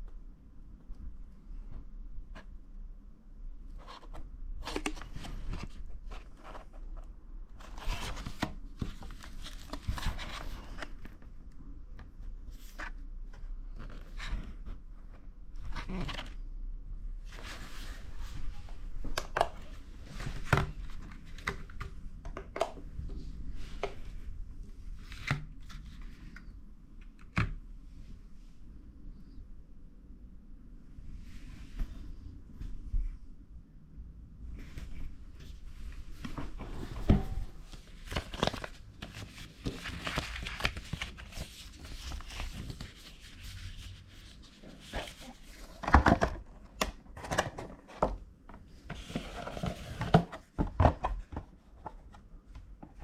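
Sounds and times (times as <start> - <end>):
cardboard and plastic rustling: 3.8 - 11.3, 34.6 - 53.0.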